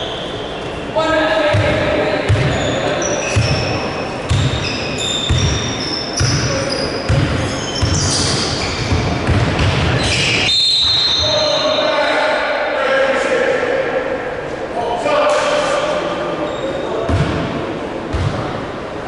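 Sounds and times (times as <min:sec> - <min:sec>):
basketball dribbling on a court: 0:01.5 - 0:02.7, 0:04.3 - 0:06.5, 0:07.1 - 0:10.0
short high squeaks: 0:02.5 - 0:03.8, 0:04.4 - 0:08.9.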